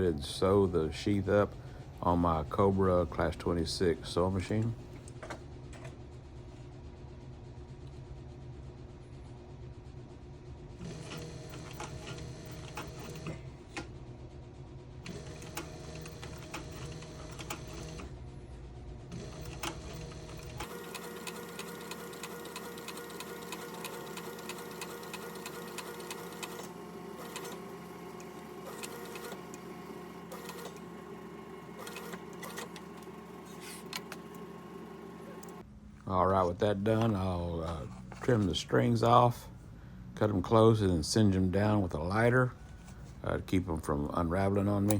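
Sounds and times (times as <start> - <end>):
sewing machine stitching leather: 10.8 - 13.8, 15.0 - 18.1, 19.1 - 35.6.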